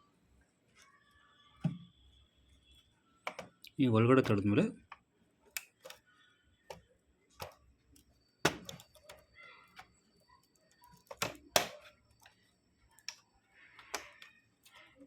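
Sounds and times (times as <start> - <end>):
plastic clicks and taps: 3.2 - 6.0, 10.8 - 12.4, 13.8 - 14.8.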